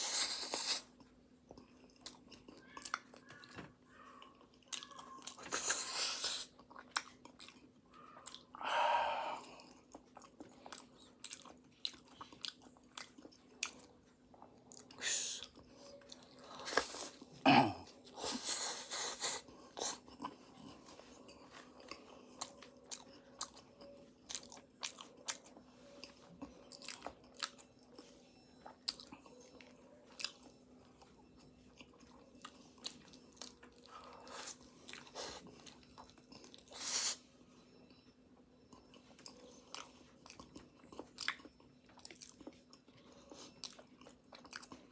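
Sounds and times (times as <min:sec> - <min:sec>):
person chewing crunchy pastry: 0:00.0 - 0:44.9.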